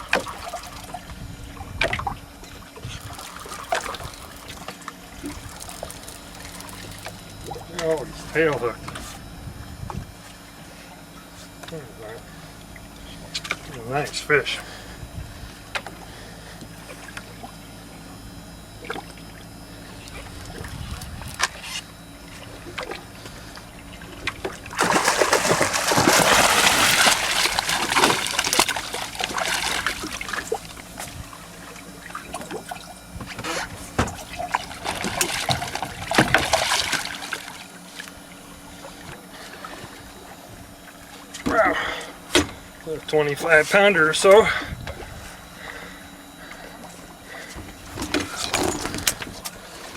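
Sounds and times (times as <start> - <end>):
fish splashing in water: 1.8 - 8.2, 22.5 - 38.1.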